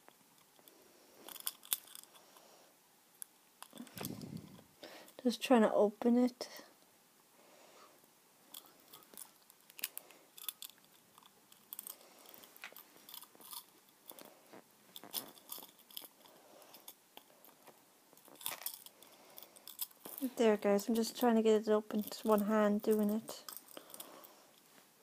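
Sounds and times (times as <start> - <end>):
pocket watch clicks and rustles: 0.4 - 2.2, 3.6 - 4.2, 8.5 - 14.3, 14.9 - 20.3, 21.9 - 24.7.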